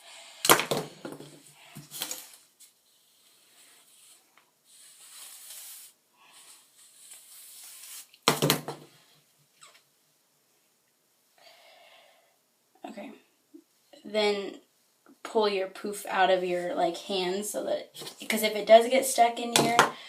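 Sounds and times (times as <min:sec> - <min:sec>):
hairbrush brushing through hair: 0:02.1 - 0:08.2.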